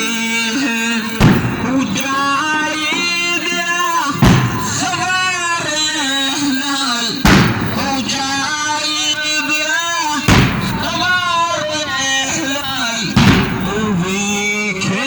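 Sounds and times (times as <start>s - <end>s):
man chanting: 0.0s - 15.0s
heavy thump: 0.8s - 5.6s, 6.3s - 14.4s.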